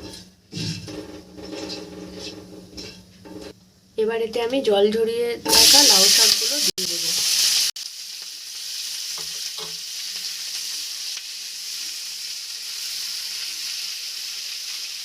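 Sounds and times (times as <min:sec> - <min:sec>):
greens sizzling in hot oil: 0:05.5 - 0:15.0.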